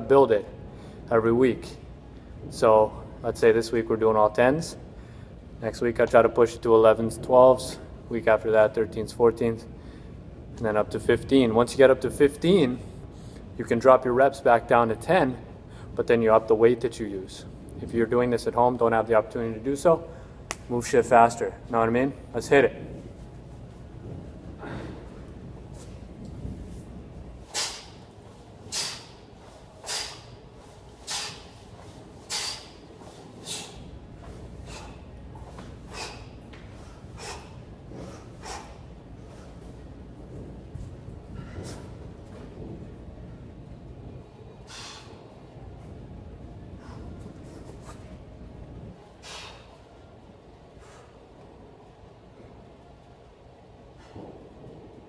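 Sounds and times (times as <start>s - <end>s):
man exhaling forcefully: 24.6s - 25.2s, 27.5s - 28.0s, 28.7s - 29.2s, 29.8s - 30.4s, 31.0s - 31.6s, 32.2s - 32.8s, 33.4s - 33.9s, 35.8s - 38.8s, 44.7s - 45.2s, 49.2s - 49.8s
person breathing hard: 24.6s - 25.3s, 29.8s - 30.4s, 32.2s - 39.6s.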